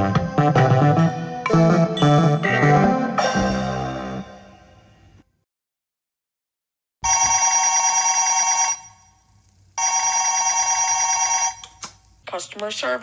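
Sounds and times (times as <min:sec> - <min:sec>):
telephone ringing: 0:07.0 - 0:09.1, 0:09.8 - 0:11.6.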